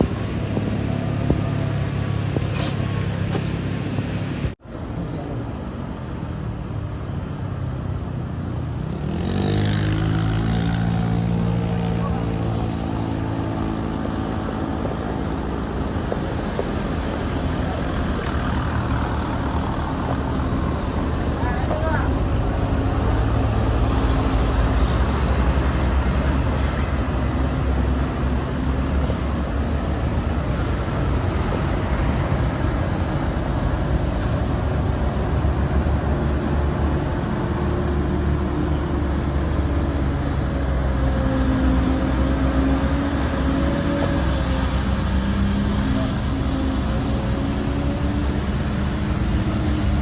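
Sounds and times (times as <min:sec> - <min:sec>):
heavy vehicle engine running: 0:00.0 - 0:06.2, 0:09.5 - 0:50.0.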